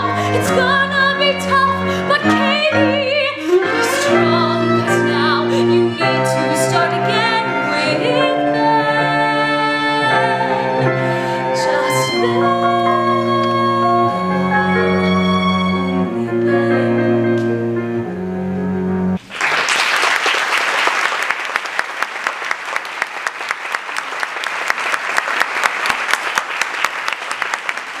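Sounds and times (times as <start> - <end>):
keyboard and strings chords: 0.0 - 19.2
audience applauding: 19.2 - 28.0.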